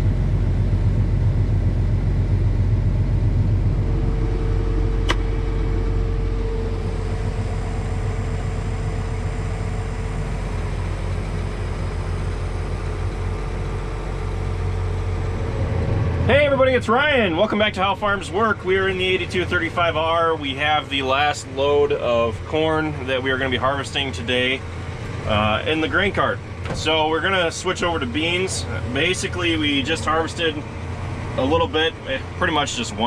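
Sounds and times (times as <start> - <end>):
tractor engine drone: 0.0 - 33.0
sharp click: 5.0 - 5.3.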